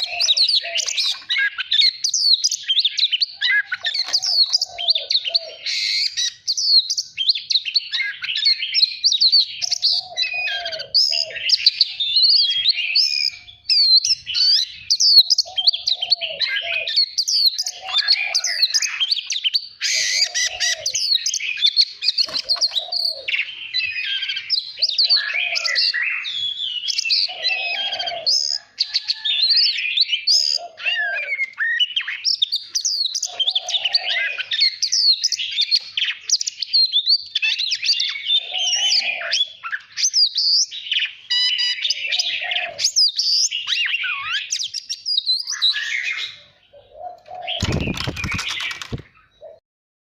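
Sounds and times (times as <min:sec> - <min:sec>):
bird singing whistled song: 0:00.0 - 0:49.6
crackling noise: 0:47.6 - 0:49.1.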